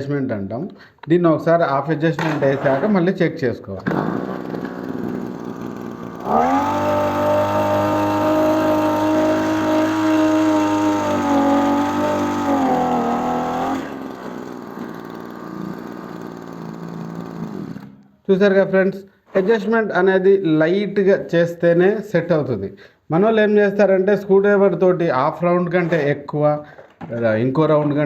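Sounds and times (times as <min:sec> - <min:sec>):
small two-stroke engine revving: 0:03.9 - 0:18.0.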